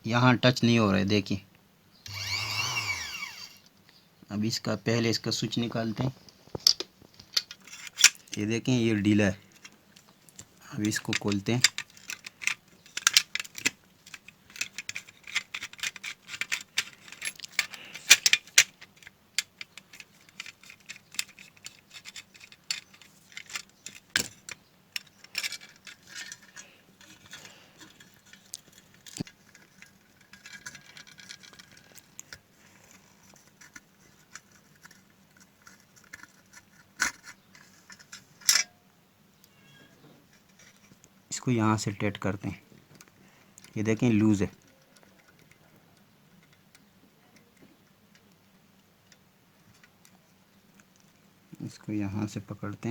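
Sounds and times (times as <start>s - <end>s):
plastic parts clicking and rattling: 2.1s - 3.6s, 6.5s - 8.6s, 9.2s - 38.8s, 40.3s - 41.2s, 42.4s - 52.9s.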